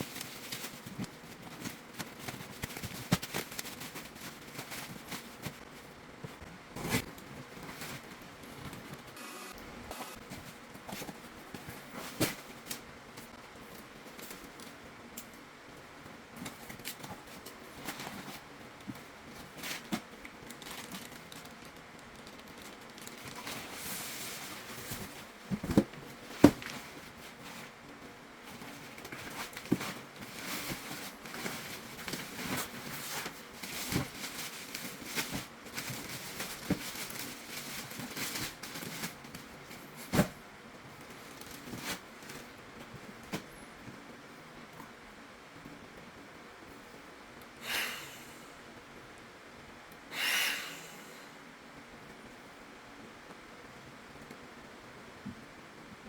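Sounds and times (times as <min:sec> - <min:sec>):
plastic packaging crinkling: 0:19.7 - 0:25.8.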